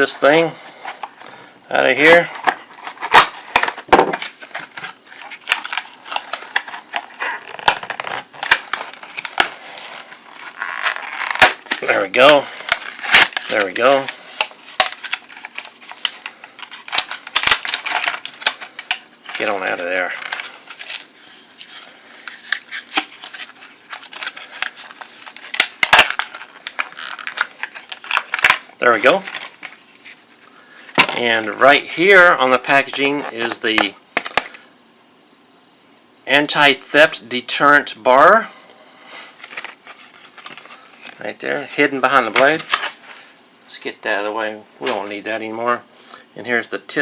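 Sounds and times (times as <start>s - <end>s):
plastic packaging cracking and crinkling: 2.1s - 31.8s, 39.4s - 43.1s.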